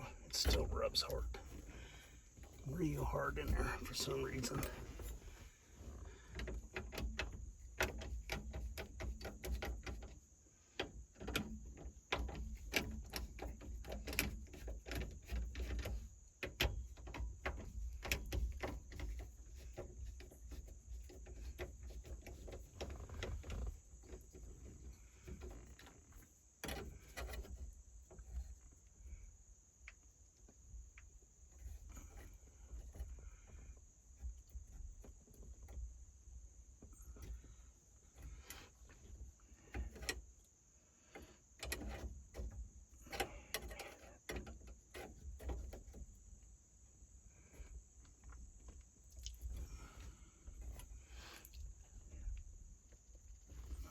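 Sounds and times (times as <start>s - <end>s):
clicks and knocks of parts: 6.1s - 28.8s, 38.1s - 40.5s, 41.1s - 46.3s.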